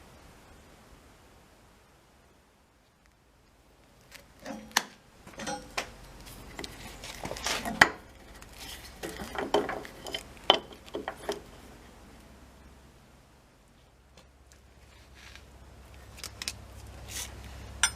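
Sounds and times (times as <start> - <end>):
faint low hum: 0.0 - 17.9
hard objects clinking and knocking: 5.3 - 5.9, 8.8 - 11.5.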